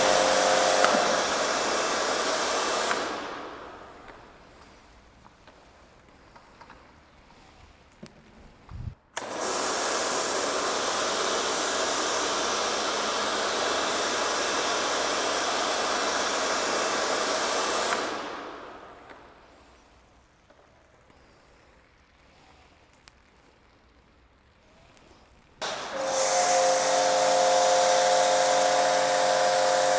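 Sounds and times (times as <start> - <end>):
pressure washer foam spray hiss: 0.0 - 4.5, 9.2 - 18.9, 25.6 - 29.9.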